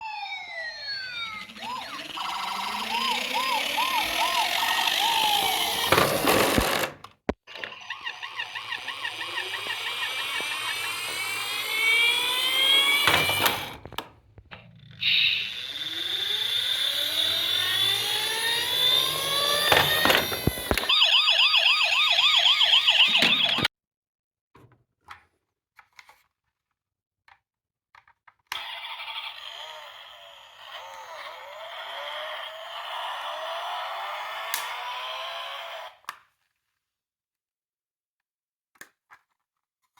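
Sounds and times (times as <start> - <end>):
toy sirens wailing and yelping: 0.0 - 6.8, 7.5 - 13.8, 15.0 - 23.7, 28.5 - 36.1.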